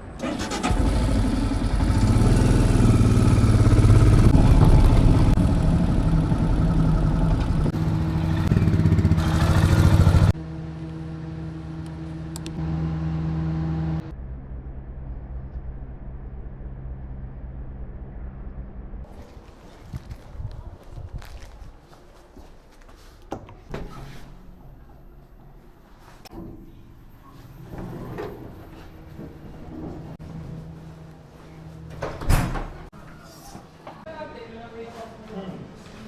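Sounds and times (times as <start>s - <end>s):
vehicle engine running: 0.2s - 18.4s.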